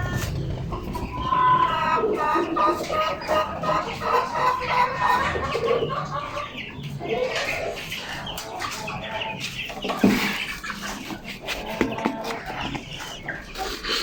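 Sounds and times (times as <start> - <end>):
birds calling: 0.0 - 14.0.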